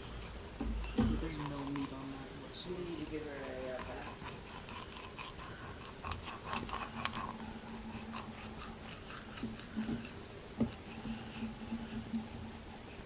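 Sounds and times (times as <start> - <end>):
steady low hum: 0.0 - 13.0
knife scraping and cutting fish: 3.3 - 13.0.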